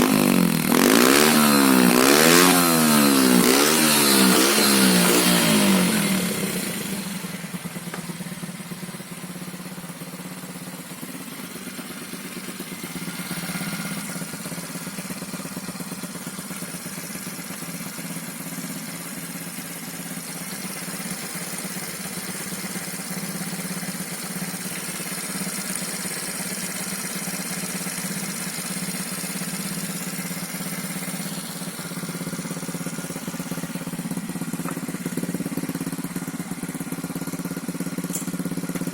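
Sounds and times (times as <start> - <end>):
small motorbike engine idling: 0.0 - 38.9.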